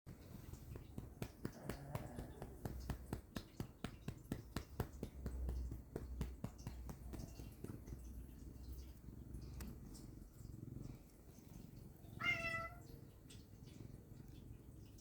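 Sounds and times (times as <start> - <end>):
hand patting a cat: 0.2 - 8.0.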